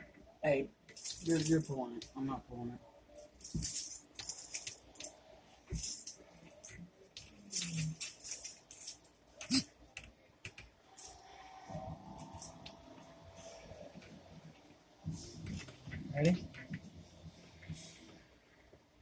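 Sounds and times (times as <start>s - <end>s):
metal buckle jangling: 0.9s - 1.8s, 3.2s - 9.6s.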